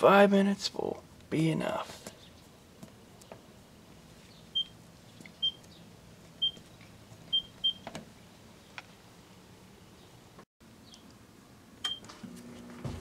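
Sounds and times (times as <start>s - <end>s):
microwave keypad beeps: 5.4s - 5.6s, 6.4s - 6.6s, 7.3s - 7.8s.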